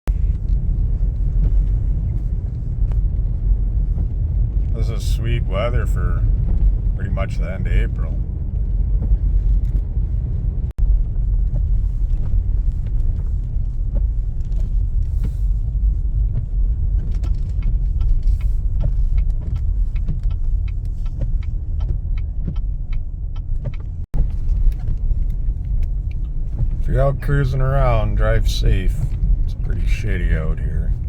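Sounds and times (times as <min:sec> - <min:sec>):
road rumble inside car: 0:00.0 - 0:31.0
light sharp ticks: 0:11.6 - 0:30.4.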